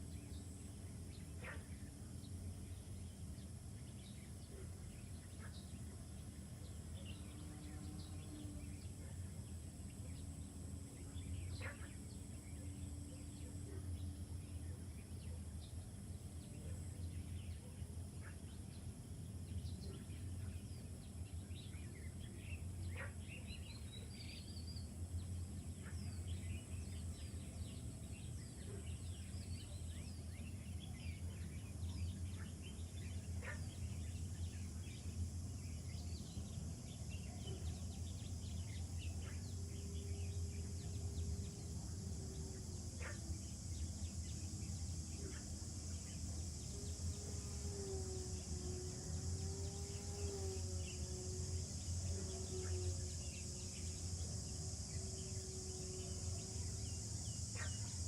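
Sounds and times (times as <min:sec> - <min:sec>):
steady low hum: 0:00.0 - 0:58.0
birds chirping: 0:19.5 - 0:58.0.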